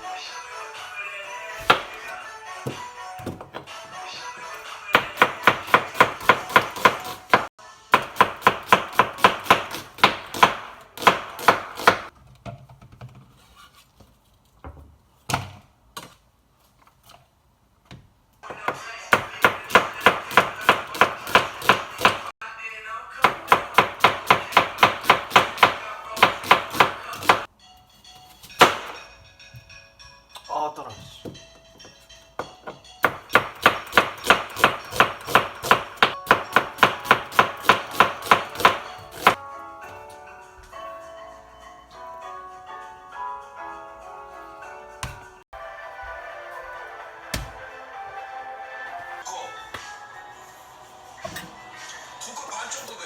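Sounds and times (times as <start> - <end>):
knife chopping on cutting board: 1.6 - 1.9, 5.0 - 12.1, 19.1 - 22.3, 23.2 - 27.5, 33.1 - 39.4.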